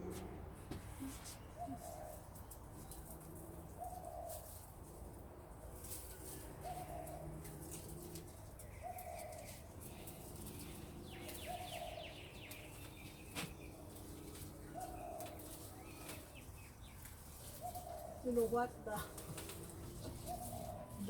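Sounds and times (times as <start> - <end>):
dove cooing: 6.6 - 12.5, 14.3 - 16.5, 17.3 - 21.0
bird chirping: 8.6 - 18.6.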